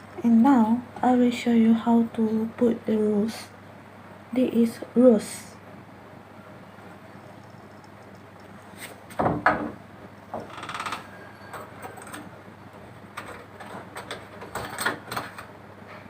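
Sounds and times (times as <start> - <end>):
knocks on a door: 9.2 - 10.5.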